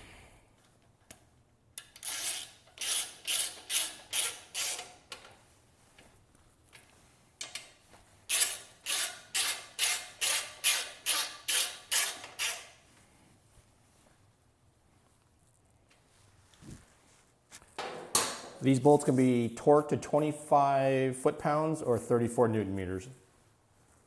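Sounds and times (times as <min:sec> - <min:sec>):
ratchet wrench clicking: 0:01.8 - 0:04.9, 0:08.3 - 0:12.7.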